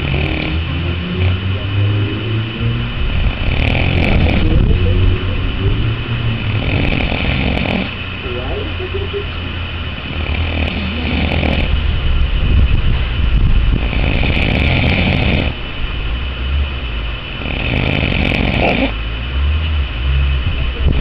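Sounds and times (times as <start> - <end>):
man snoring: 0.0 - 8.8, 10.0 - 11.7, 13.8 - 15.6, 17.4 - 19.0
steady low rumble: 0.0 - 21.0.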